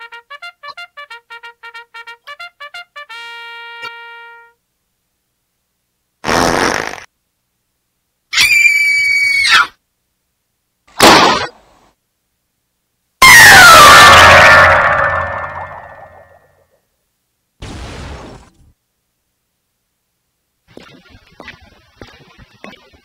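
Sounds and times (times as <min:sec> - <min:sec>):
trumpet staccato notes: 0:00.0 - 0:04.6, 0:13.2 - 0:16.3
buzzy pitched tone: 0:13.2 - 0:16.4.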